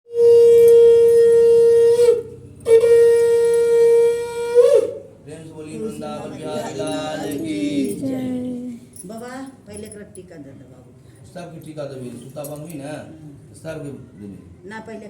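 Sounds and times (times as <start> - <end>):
conch shell blasts: 0.1 - 5.1.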